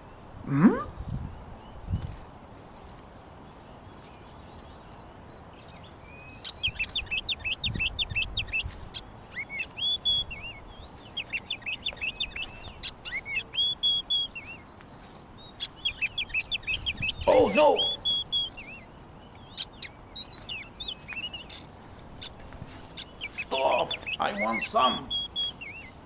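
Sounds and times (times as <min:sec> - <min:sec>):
low steady background noise: 0:00.0 - 0:26.0
high bird-like chirps: 0:06.2 - 0:26.0.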